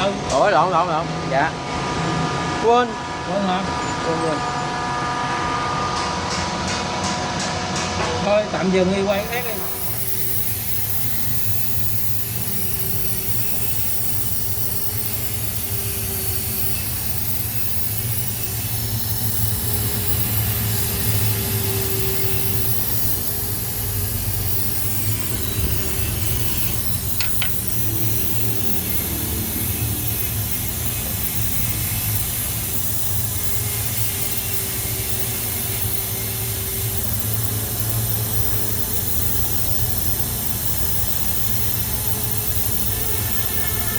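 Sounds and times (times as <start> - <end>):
low machine hum: 1.0 - 43.9
constant hiss: 9.1 - 43.9.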